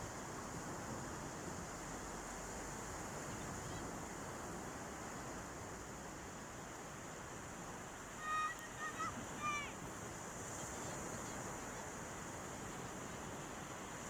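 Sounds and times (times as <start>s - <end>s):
sea waves rushing: 8.1s - 9.8s.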